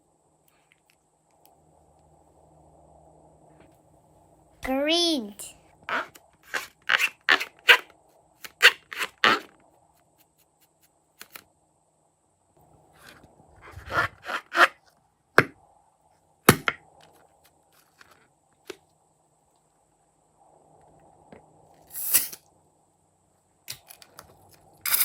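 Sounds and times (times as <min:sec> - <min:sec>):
objects clicking and scraping: 0:23.7 - 0:25.0.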